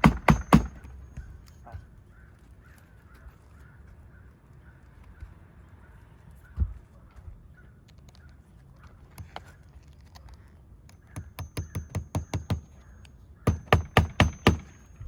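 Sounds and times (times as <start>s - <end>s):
hammer driving nails into shingle: 0.0s - 1.3s, 11.0s - 12.8s, 13.5s - 15.0s.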